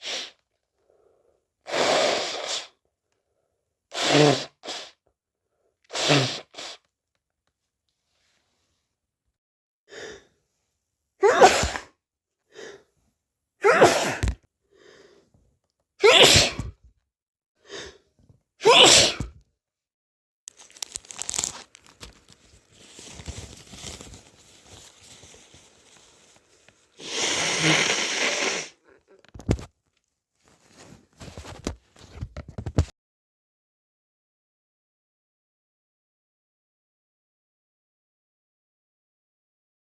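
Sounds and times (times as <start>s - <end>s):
person sneezing: 1.7s - 2.7s, 3.9s - 5.0s, 5.9s - 6.8s, 11.2s - 11.9s, 13.6s - 14.4s, 16.0s - 16.8s, 18.6s - 19.4s, 27.0s - 29.2s
sharp breath in: 14.8s - 15.2s, 27.0s - 28.8s
rustling: 20.5s - 27.9s, 30.4s - 32.9s.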